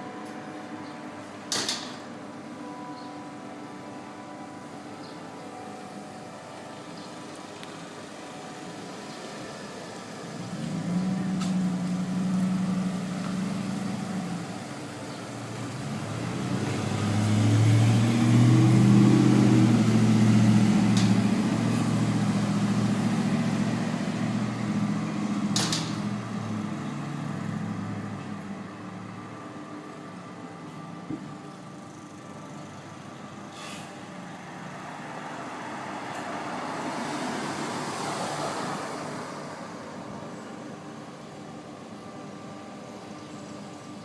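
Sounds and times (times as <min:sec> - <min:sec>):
heavy vehicle engine passing: 0:08.7 - 0:29.2.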